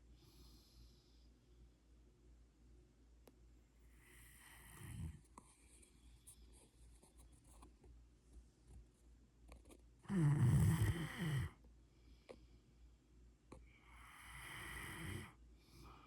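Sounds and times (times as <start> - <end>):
dog snoring: 4.0 - 5.3, 10.1 - 11.6, 13.8 - 16.0.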